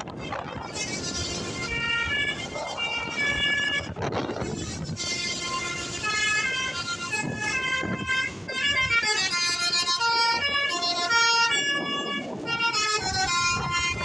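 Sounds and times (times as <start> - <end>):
musical bus horn melody: 0.0 - 14.0.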